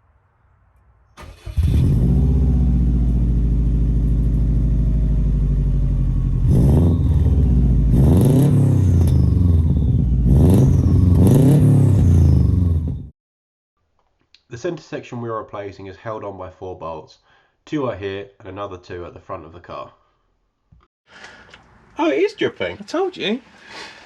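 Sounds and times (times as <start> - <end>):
car engine idling loud: 1.2 - 10.6
engine revving in short blips: 1.2 - 13.1.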